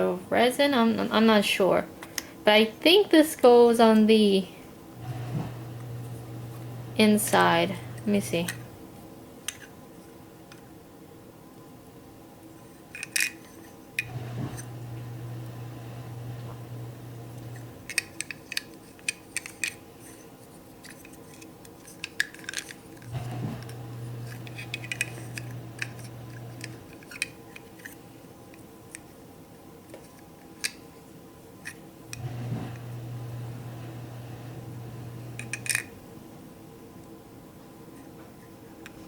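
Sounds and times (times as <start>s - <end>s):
low hum: 5.0s - 8.8s, 14.0s - 17.9s, 23.1s - 26.9s, 32.1s - 35.7s.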